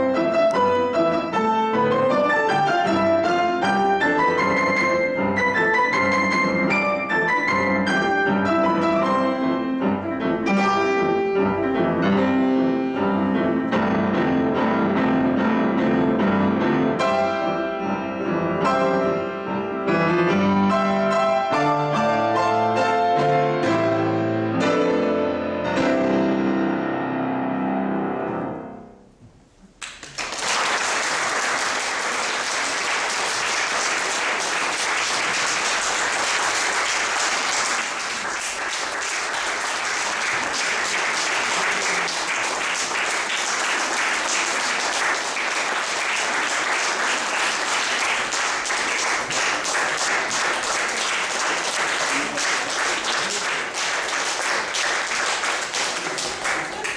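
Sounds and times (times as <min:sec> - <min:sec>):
piano playing chords: 0:00.0 - 0:29.2
audience applauding: 0:29.8 - 0:56.9.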